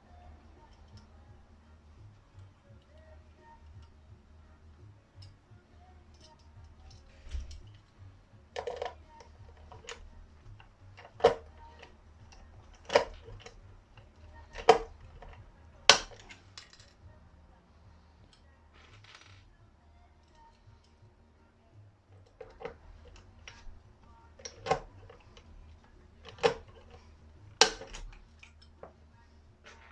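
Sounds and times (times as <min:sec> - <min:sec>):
faint low hum: 0:00.0 - 0:29.9
metal parts clinking: 0:08.6 - 0:17.0, 0:22.2 - 0:28.9.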